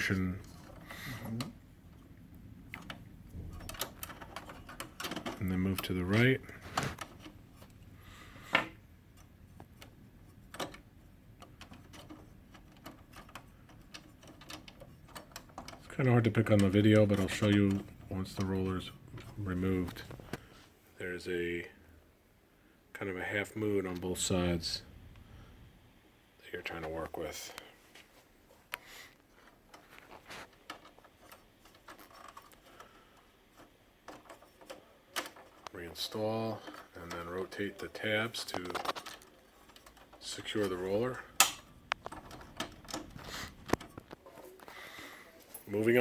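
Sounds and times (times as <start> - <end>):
plastic clicks of printer roller: 29.7 - 44.4.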